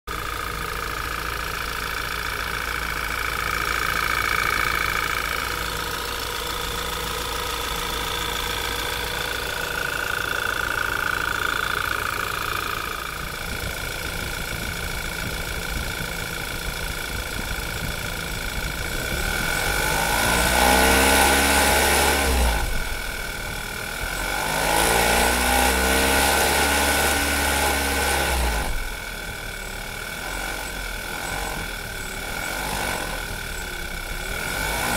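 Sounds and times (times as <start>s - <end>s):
car engine idling with high whine: 0.1s - 34.9s
car engine revving: 18.2s - 29.1s, 29.9s - 34.9s.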